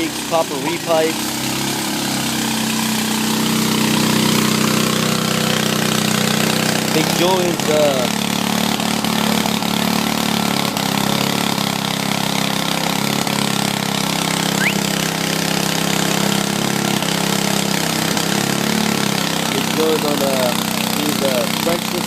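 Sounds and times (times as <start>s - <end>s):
machine engine humming: 14.3s - 22.0s
brief high squeak: 14.6s - 14.9s.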